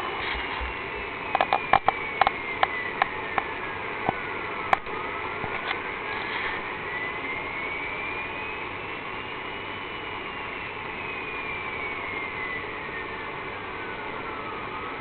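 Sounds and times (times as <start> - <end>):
radio static hiss: 0.0 - 6.9
sweeping whistle tone: 0.0 - 15.0.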